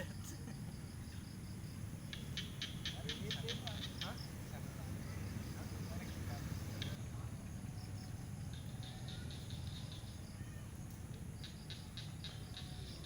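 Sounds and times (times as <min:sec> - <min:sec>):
small bird chirping: 0:02.0 - 0:07.0, 0:08.0 - 0:10.6.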